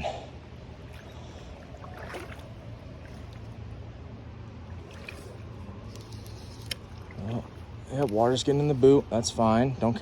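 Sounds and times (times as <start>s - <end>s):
faint water splashes: 0.6s - 8.5s
creek water rushing: 0.7s - 3.8s.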